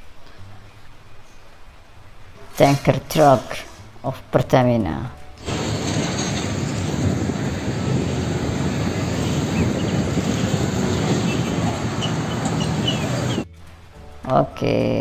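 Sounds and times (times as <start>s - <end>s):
road noise: 5.4s - 13.5s
truck engine rumble: 5.4s - 13.5s.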